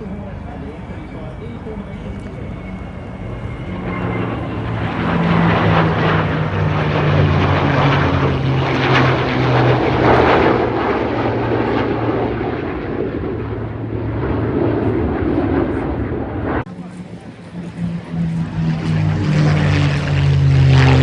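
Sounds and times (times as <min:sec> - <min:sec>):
propeller airplane flying past: 0:00.0 - 0:21.0.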